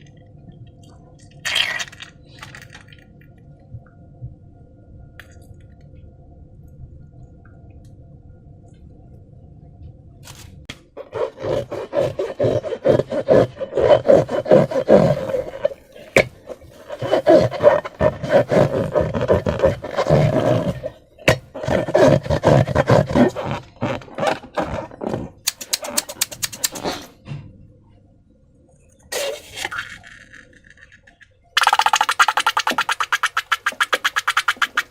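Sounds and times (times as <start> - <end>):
slime squelching and crackling: 1.4 - 3.0, 11.1 - 27.0, 31.6 - 34.9.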